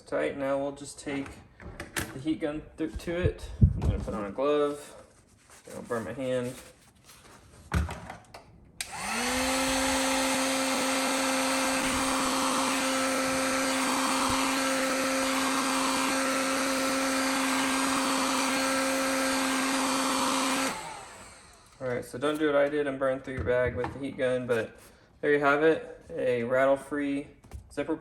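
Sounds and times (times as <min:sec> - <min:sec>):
heat gun blowing hiss: 0:08.8 - 0:21.8
heat gun fan hum: 0:08.8 - 0:22.6.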